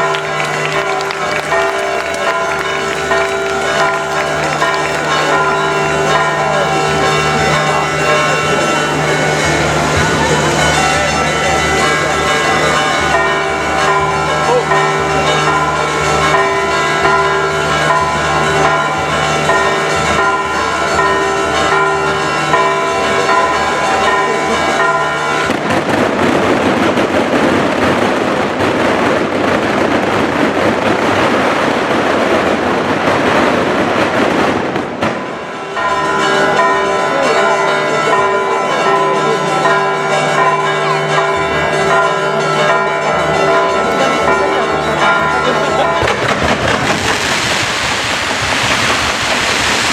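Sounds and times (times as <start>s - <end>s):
crackling fireworks: 0.0s - 18.6s, 25.4s - 36.6s, 40.7s - 49.9s
church bells pealing: 0.0s - 49.9s.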